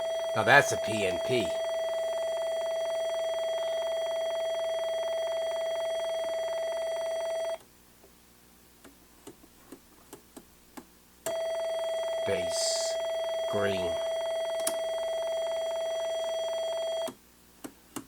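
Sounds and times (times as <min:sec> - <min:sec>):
steady electronic beep tone: 0:00.0 - 0:07.6.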